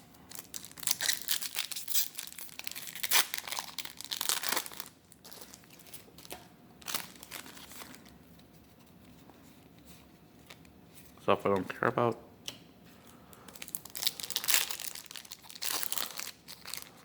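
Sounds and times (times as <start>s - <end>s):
foil wrapper crinkling and tearing: 0.0s - 8.2s, 13.3s - 17.0s
wrapper and cards rustling: 0.3s - 9.2s, 13.5s - 17.0s.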